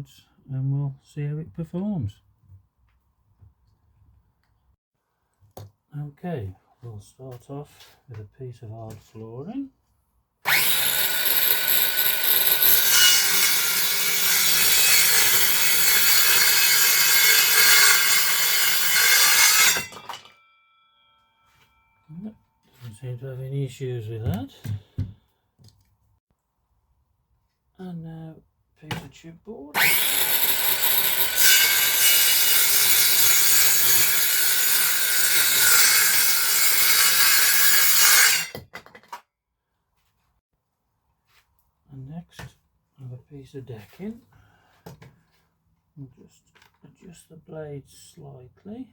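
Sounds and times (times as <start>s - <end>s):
circular saw cutting board: 10.5s - 20.4s, 29.8s - 38.6s.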